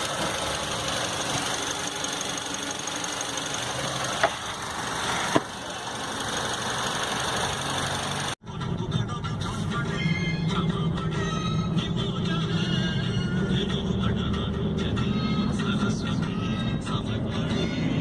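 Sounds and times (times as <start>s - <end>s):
car engine idling: 0.0s - 8.4s
music: 8.4s - 18.0s.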